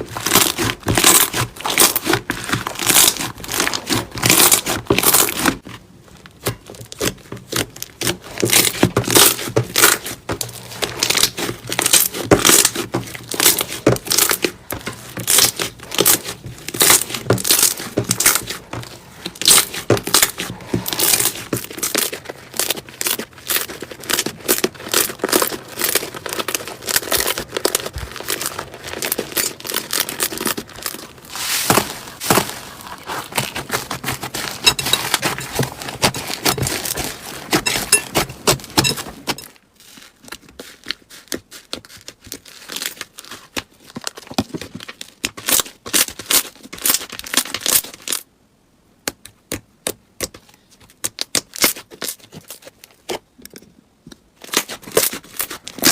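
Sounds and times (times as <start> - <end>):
slime crackling and popping: 0.0 - 39.5.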